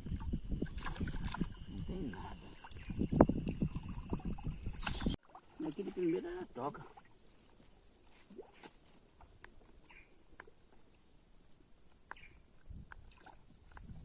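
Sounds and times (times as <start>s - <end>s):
faint steady high hiss: 5.5s - 13.3s.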